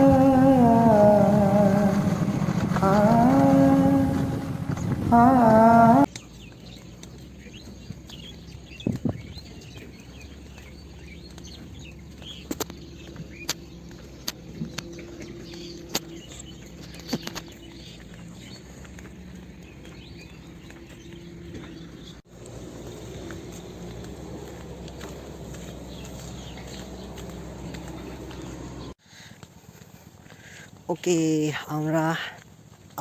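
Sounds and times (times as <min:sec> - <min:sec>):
person singing: 0:00.0 - 0:06.1
small birds chirping: 0:00.0 - 0:29.0.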